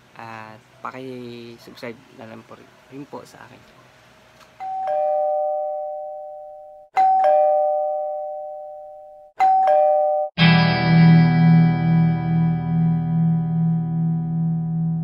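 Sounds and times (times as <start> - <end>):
ding-dong doorbell chime: 4.6 - 10.4
distorted electric guitar chord: 10.4 - 15.0.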